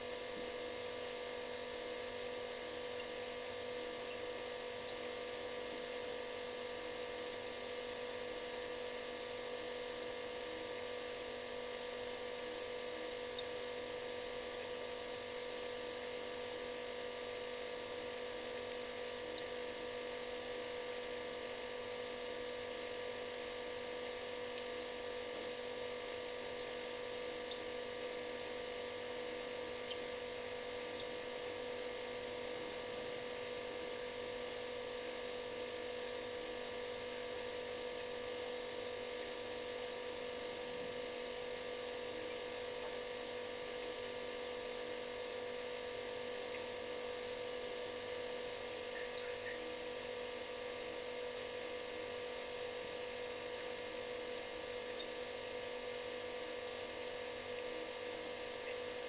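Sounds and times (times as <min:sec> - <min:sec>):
refrigerator humming: 0:00.0 - 0:59.0.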